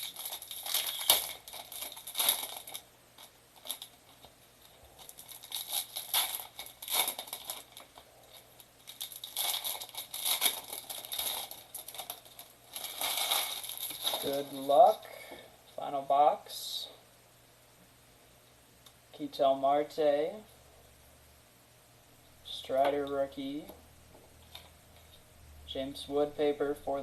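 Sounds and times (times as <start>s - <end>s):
packaging crinkling and tearing: 0.0s - 14.7s.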